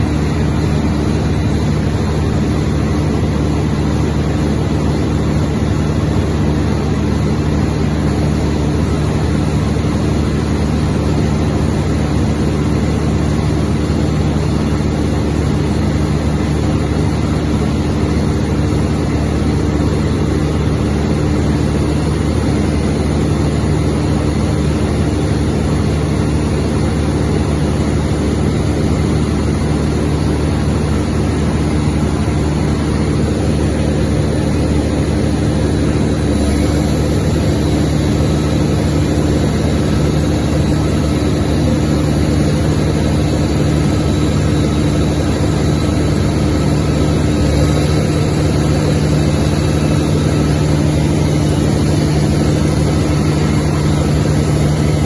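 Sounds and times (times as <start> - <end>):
diesel generator running: 0.0 - 55.0.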